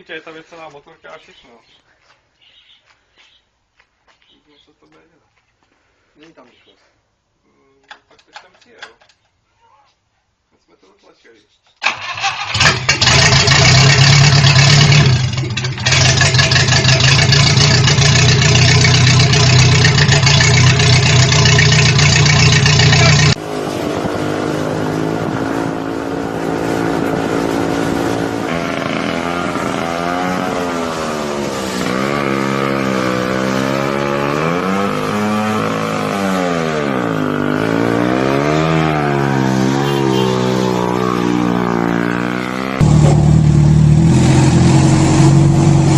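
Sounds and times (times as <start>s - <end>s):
motorcycle engine running and revving: 12.6s - 45.9s.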